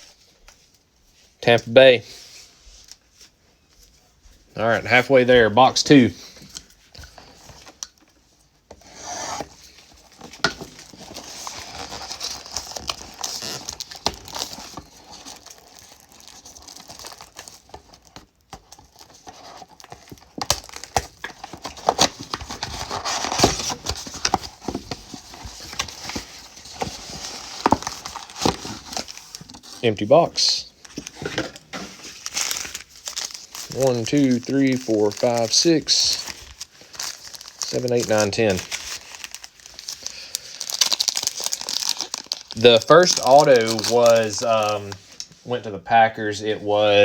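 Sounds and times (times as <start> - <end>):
cardboard rubbing and scraping: 8.8 - 9.7
foil packs crinkling: 8.8 - 45.3.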